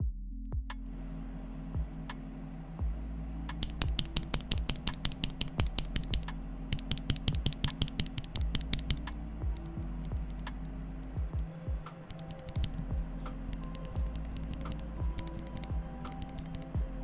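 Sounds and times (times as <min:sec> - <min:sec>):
mechanical keyboard typing: 0:03.6 - 0:09.0, 0:12.1 - 0:17.0.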